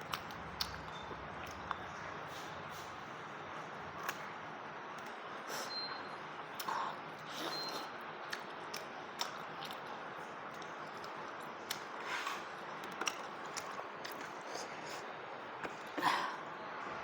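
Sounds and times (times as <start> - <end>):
person chewing and lip-smacking: 0.0 - 2.0, 3.9 - 4.3, 4.9 - 16.0.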